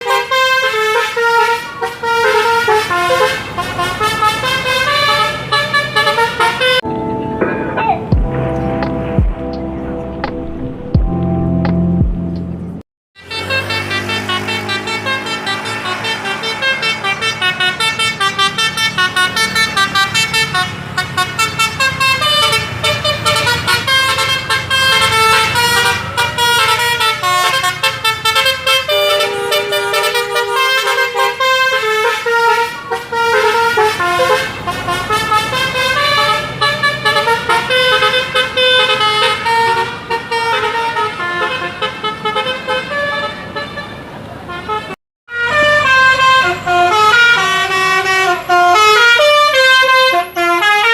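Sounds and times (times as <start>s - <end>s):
multi-tone bus horn melody: 0.0s - 10.2s, 11.0s - 50.9s
bus engine low hum: 1.8s - 12.8s.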